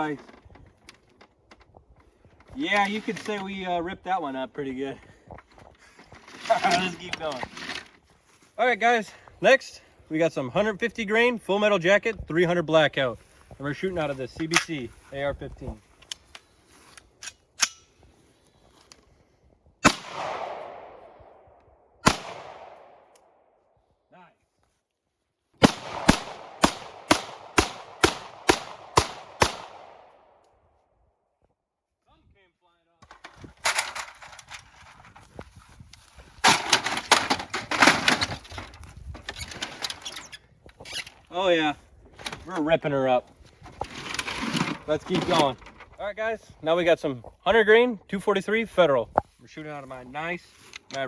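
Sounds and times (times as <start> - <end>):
rifle shots with echo: 19.8 - 21.4, 22.0 - 23.0, 25.6 - 30.2.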